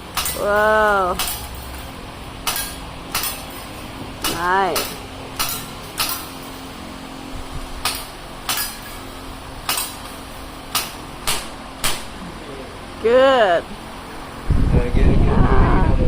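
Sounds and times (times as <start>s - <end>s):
sharp ringing knocks and clanks: 0.0s - 6.6s, 7.8s - 12.2s.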